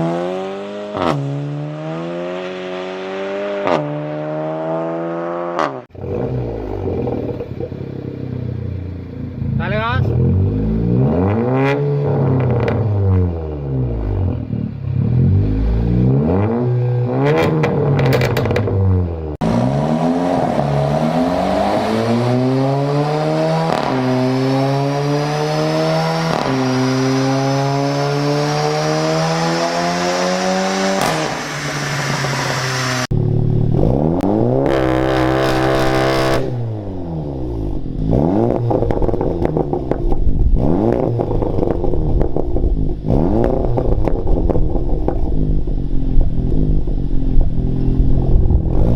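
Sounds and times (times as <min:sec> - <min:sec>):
car engine revving and accelerating: 0:00.0 - 0:48.9.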